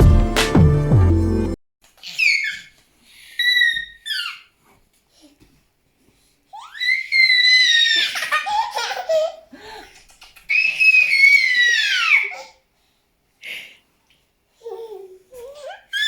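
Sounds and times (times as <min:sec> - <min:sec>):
baby squealing: 0:02.0 - 0:04.5, 0:06.6 - 0:09.2, 0:10.5 - 0:12.5, 0:15.6 - 0:16.0
baby babbling laughter: 0:06.6 - 0:12.6.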